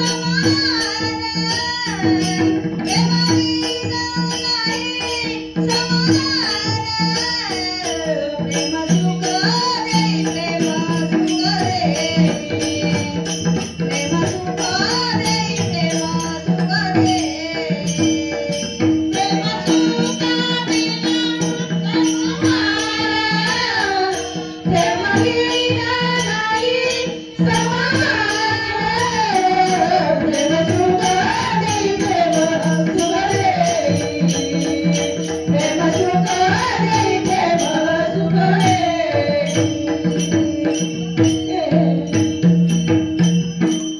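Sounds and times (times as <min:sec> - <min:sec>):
hand cymbals: 0:00.0 - 0:43.9.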